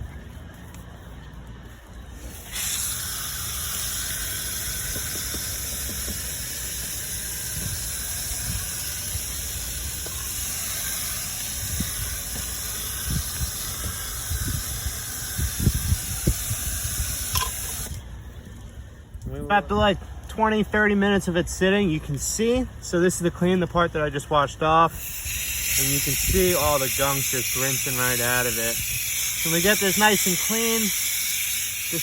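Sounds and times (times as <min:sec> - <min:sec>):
hissing spray: 0:02.2 - 0:18.0, 0:25.0 - 0:32.0.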